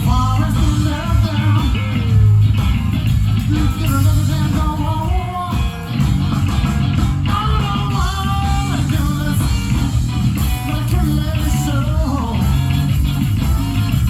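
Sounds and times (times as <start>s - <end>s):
bass guitar: 0.0s - 14.0s
drums: 0.0s - 14.0s
electric guitar with bent notes: 0.0s - 14.0s.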